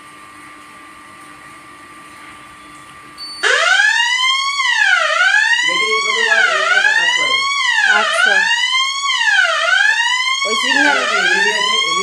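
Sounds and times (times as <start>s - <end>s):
fire alarm siren wailing: 3.4s - 12.0s.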